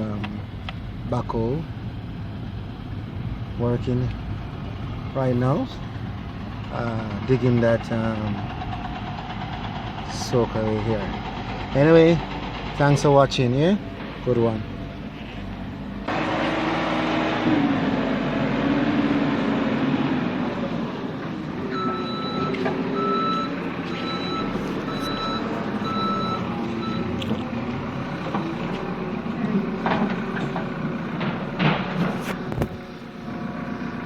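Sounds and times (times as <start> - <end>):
backhoe engine digging: 0.0 - 34.0
reversing alarm beeping: 21.7 - 27.4.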